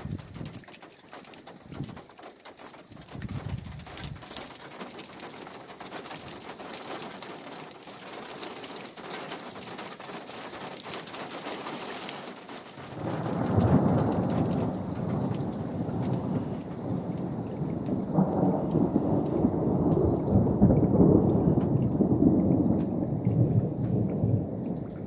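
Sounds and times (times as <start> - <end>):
rain pattering: 0.0 - 25.0
thunder rumbling: 3.0 - 4.4, 12.8 - 25.0.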